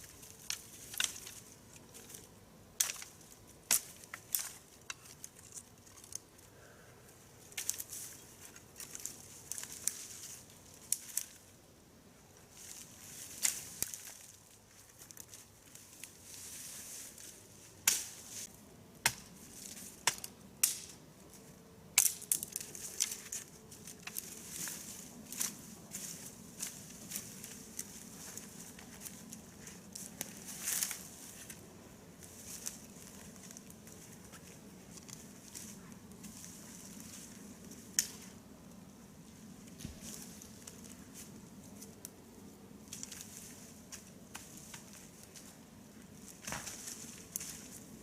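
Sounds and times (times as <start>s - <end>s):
dry twigs snapping and crunching: 0.0s - 6.5s, 7.4s - 11.5s, 12.5s - 16.4s, 17.2s - 18.3s, 19.0s - 38.4s, 39.6s - 42.2s, 42.8s - 48.0s
soft rustling of brush: 12.4s - 18.6s, 22.5s - 38.4s.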